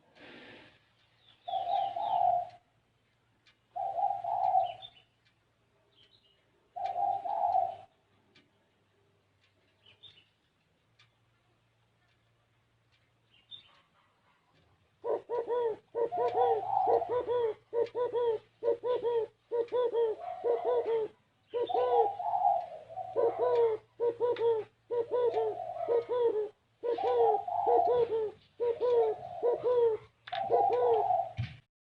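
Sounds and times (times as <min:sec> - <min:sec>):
dove cooing: 0:01.4 - 0:02.7, 0:03.7 - 0:05.0, 0:06.7 - 0:07.9, 0:15.0 - 0:31.6.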